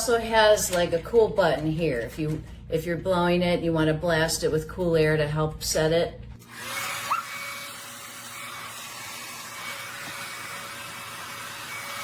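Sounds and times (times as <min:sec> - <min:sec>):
hair dryer blowing air: 0:06.6 - 0:12.0.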